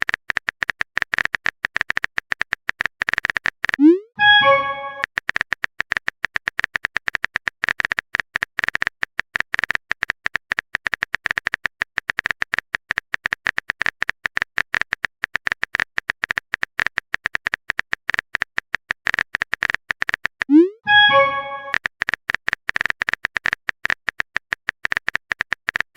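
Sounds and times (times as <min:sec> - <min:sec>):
keyboard typing clicks: 0:00.0 - 0:05.1, 0:19.4 - 0:21.8.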